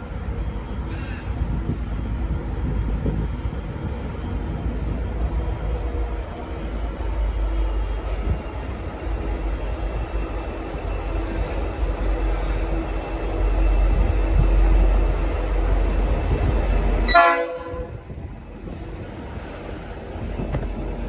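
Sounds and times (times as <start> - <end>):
diesel locomotive engine rumble: 0.0 - 21.0
locomotive horn blast: 17.0 - 18.1.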